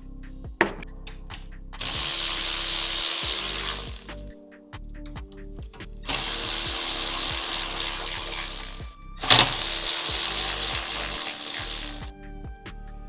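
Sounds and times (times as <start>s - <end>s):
background music: 0.0s - 13.0s
power tool running: 1.8s - 4.3s, 6.1s - 12.1s.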